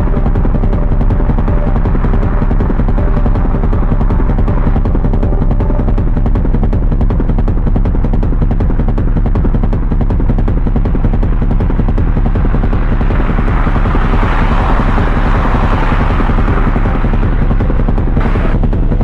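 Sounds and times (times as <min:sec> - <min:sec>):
low rumble with fluttering clicks: 0:00.0 - 0:19.0
hissing wash: 0:11.9 - 0:18.7.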